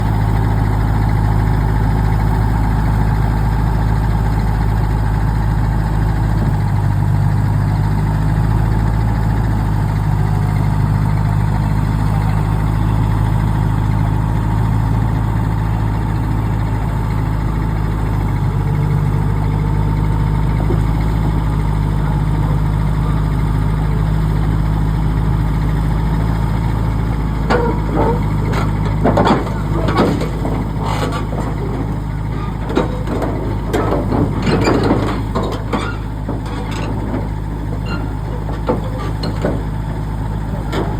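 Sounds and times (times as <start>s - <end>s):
diesel engine idling: 0.0s - 40.9s
sharp knocks: 27.5s - 40.9s.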